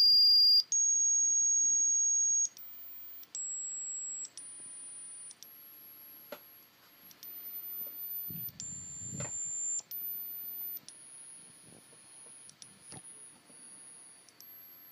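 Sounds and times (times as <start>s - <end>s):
high-pitched buzzer beeps: 0.0s - 14.9s.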